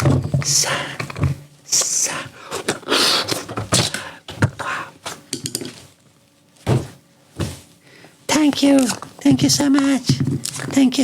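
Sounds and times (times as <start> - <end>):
knocks and thumps: 6.6 - 7.6
heavy thuds: 6.6 - 7.7.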